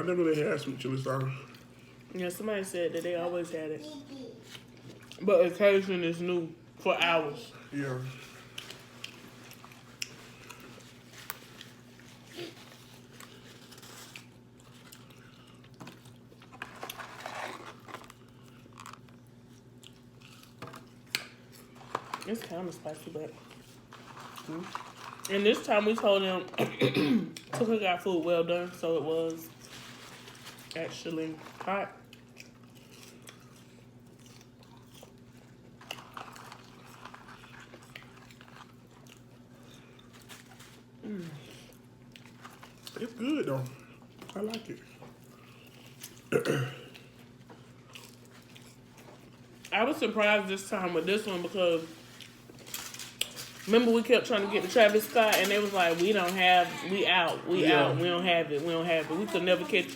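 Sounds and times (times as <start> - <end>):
low electrical hum: 0.0 - 59.9
people chewing food: 0.1 - 2.1, 4.4 - 5.9, 7.4 - 26.2, 29.1 - 50.0
small food crunches: 8.1 - 22.3, 31.4 - 46.3.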